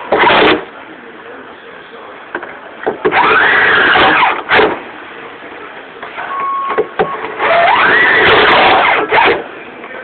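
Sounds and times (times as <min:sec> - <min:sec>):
power drill whining: 0:03.1 - 0:04.5, 0:07.4 - 0:09.4.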